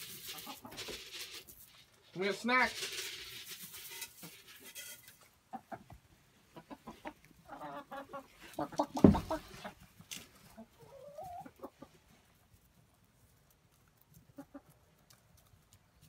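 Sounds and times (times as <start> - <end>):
hens clucking: 0.0 - 1.6, 3.2 - 12.8, 13.8 - 16.0
loud thump: 9.0 - 9.4.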